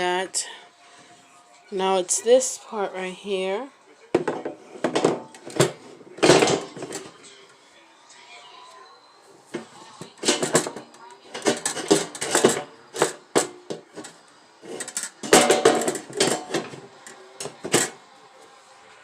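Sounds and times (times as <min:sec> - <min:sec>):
grill parts knocking and rattling: 0:04.2 - 0:07.2, 0:09.6 - 0:18.0.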